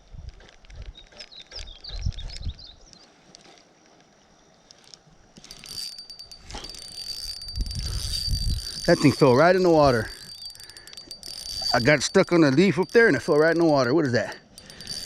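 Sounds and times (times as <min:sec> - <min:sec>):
fishing reel ratcheting clicks: 0:04.8 - 0:15.0.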